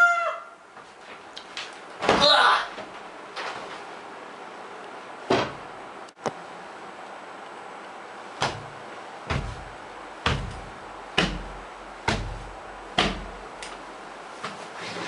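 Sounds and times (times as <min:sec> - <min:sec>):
heavy bangs with low rumble: 0:08.4 - 0:13.4.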